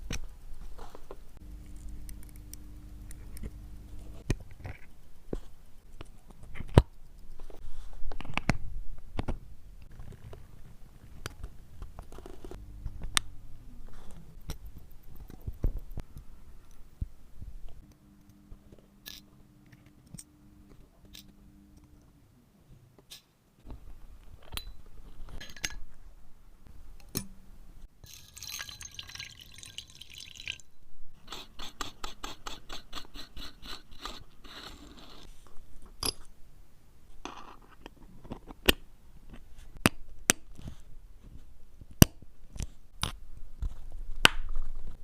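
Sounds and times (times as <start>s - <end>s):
low steady hum: 0.0s - 6.3s, 12.4s - 22.7s.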